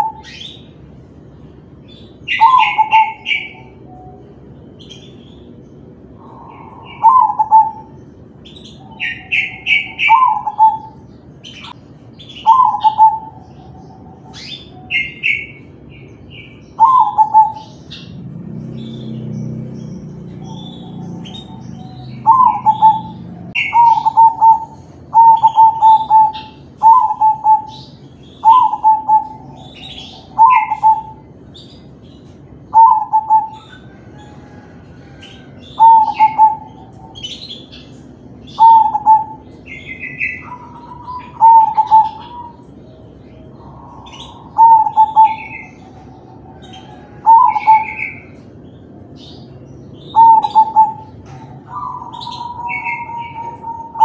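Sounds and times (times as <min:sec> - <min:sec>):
dove cooing: 0:00.0 - 0:00.7, 0:01.6 - 0:54.0
high bird chirps: 0:01.9 - 0:34.6.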